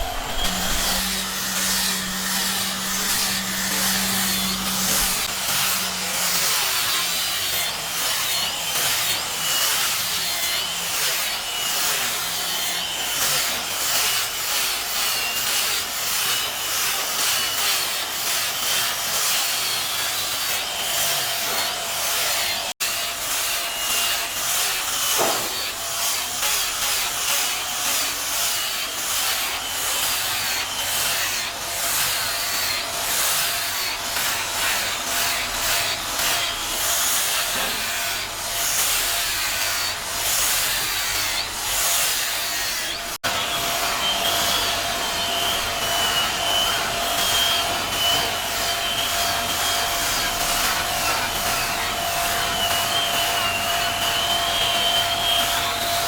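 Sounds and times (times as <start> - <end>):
wood rasping strokes: 0.0 - 8.3.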